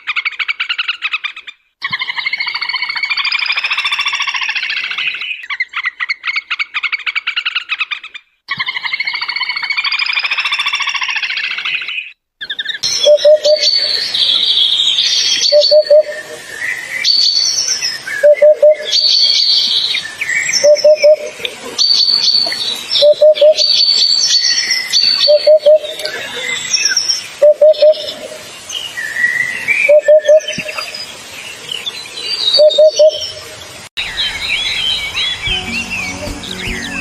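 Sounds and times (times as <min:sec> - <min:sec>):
bird chirps: 0:11.8 - 0:28.2, 0:31.9 - 0:37.0.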